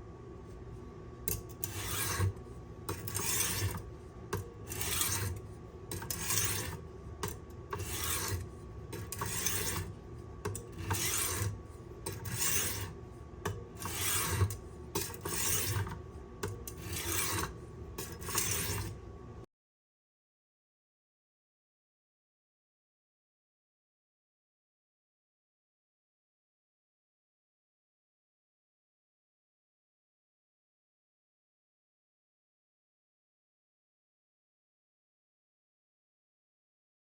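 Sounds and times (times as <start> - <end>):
knife scraping on sharpening stone: 1.3 - 19.0.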